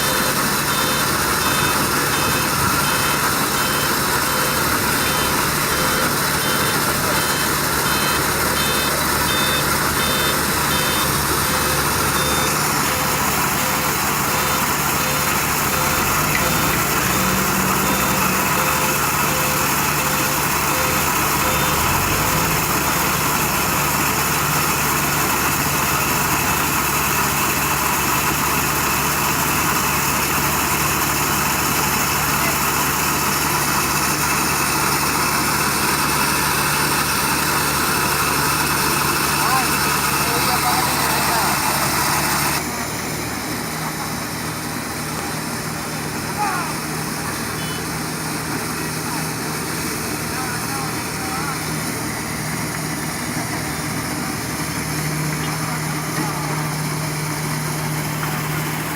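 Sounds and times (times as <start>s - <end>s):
reversing alarm beeping: 0.0s - 27.7s, 47.5s - 48.0s
diesel engines running: 0.0s - 58.9s.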